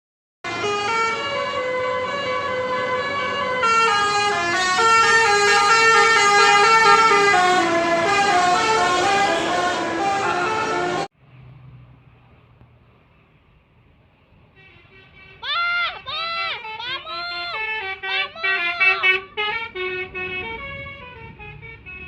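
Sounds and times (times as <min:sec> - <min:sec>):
musical air horn melody: 0:00.5 - 0:11.1, 0:16.4 - 0:22.0.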